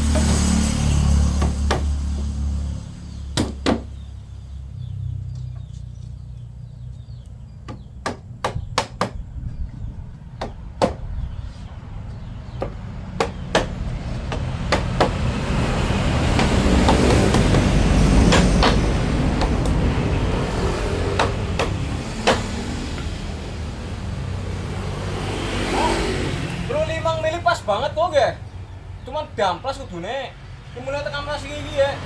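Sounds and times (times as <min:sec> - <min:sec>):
hammer striking wood: 0:01.2 - 0:02.2, 0:03.4 - 0:04.0, 0:07.7 - 0:09.2, 0:10.4 - 0:11.1, 0:12.6 - 0:19.8, 0:20.6 - 0:23.2.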